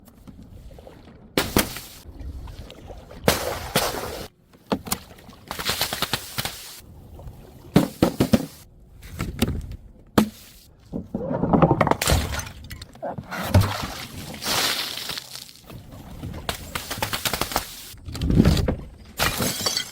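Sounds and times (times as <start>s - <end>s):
glass smashing and crunching: 19.2s - 19.9s.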